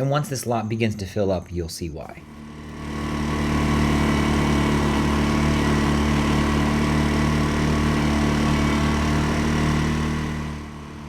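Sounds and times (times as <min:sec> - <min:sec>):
vehicle engine idling: 0:02.2 - 0:11.0.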